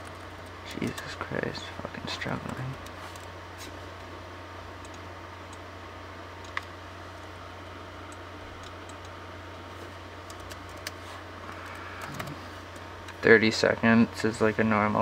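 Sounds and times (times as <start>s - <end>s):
steady low hum: 0.0s - 15.0s
computer keyboard clicks: 6.4s - 6.7s, 10.2s - 11.0s, 11.6s - 12.8s.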